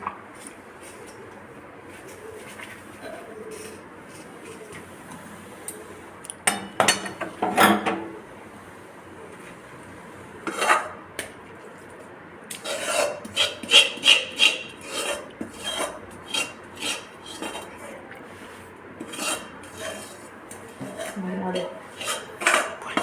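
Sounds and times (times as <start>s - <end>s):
spoon scraping metal pan: 12.5s - 17.9s, 19.0s - 23.0s.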